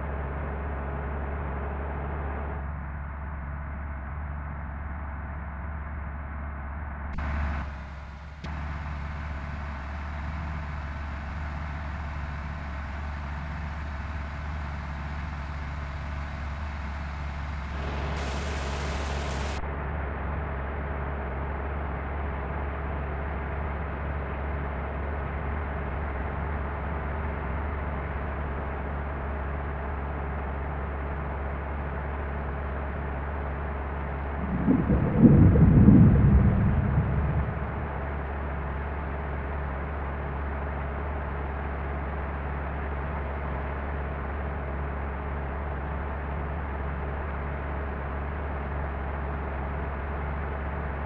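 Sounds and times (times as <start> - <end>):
bus engine and road rumble: 0.0 - 33.3, 34.0 - 51.0
brief air hiss: 17.7 - 19.6.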